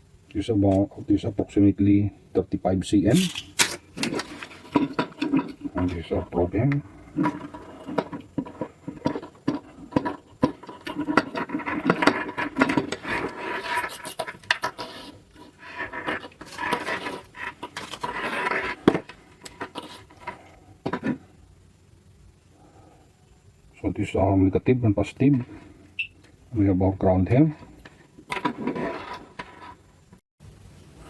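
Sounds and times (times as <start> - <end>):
cables scraping and rubbing: 3.1 - 21.2, 27.9 - 29.8.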